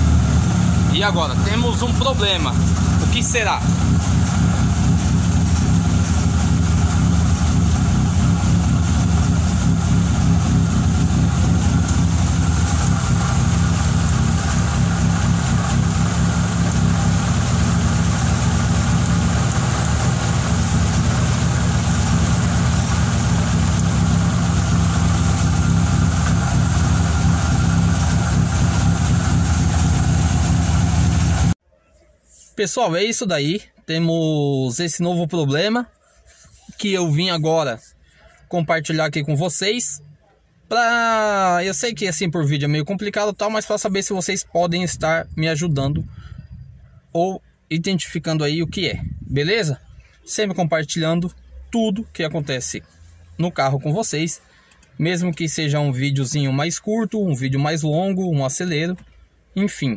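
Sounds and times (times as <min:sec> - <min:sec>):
engine with abnormal mechanical noise: 0:00.0 - 0:31.6.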